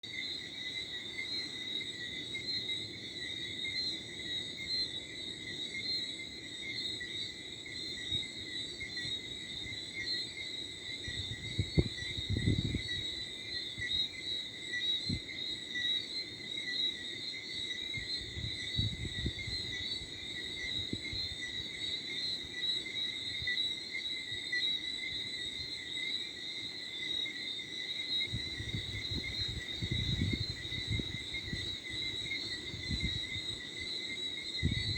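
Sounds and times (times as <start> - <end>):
crickets and frogs trilling: 0.0 - 34.9
wind rumble on microphone: 11.0 - 14.0, 15.0 - 15.4, 17.9 - 21.7, 28.2 - 34.9.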